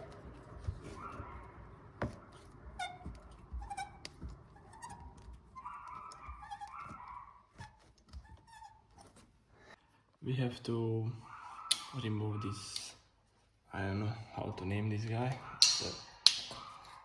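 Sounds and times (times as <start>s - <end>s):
short metal squeaks: 2.2s - 9.2s.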